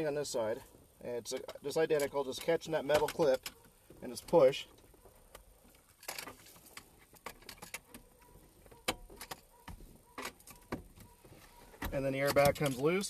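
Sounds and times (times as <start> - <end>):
light metallic clicks and taps: 1.3 - 11.2.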